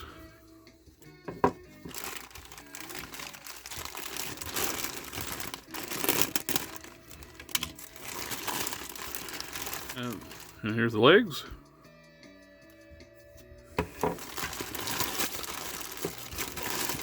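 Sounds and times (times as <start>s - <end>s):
plastic bag crinkling: 1.4s - 10.7s, 14.0s - 17.0s.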